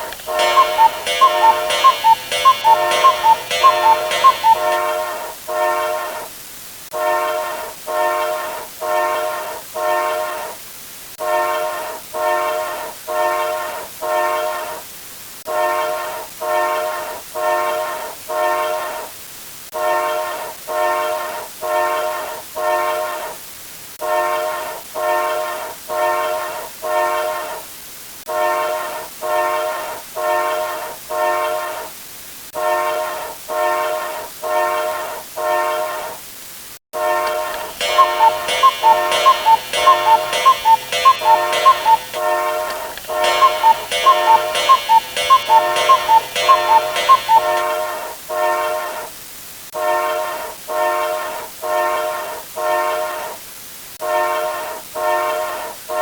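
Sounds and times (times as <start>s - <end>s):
quick pitched ticking: 0.0s - 5.2s, 37.3s - 48.0s
train air horn blasts: 0.0s - 10.6s, 11.2s - 14.8s, 24.0s - 27.6s, 37.0s - 49.1s, 49.8s - 53.4s, 54.0s - 56.0s.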